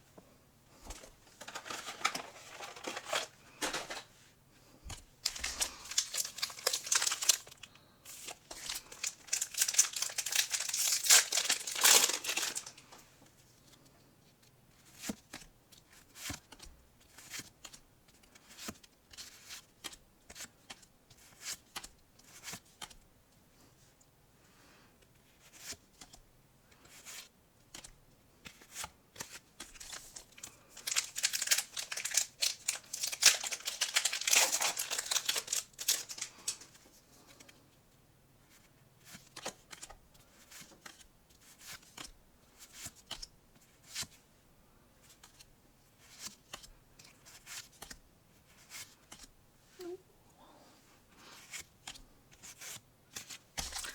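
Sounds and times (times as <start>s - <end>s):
packaging crinkling and tearing: 0.9s - 4.1s, 5.2s - 13.0s, 29.7s - 36.8s.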